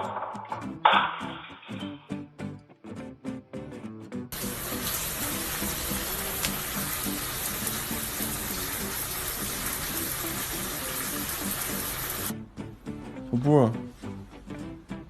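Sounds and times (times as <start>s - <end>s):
background music: 0.0s - 15.0s
water running from a tap: 4.4s - 12.3s.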